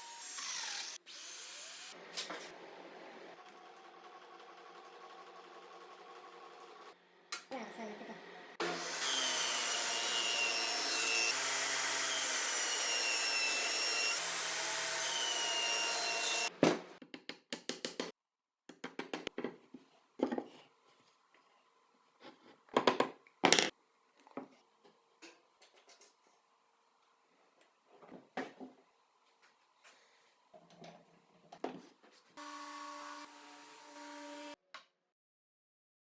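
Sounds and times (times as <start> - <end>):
power tool working wood: 8.6 - 16.5, 32.4 - 34.6.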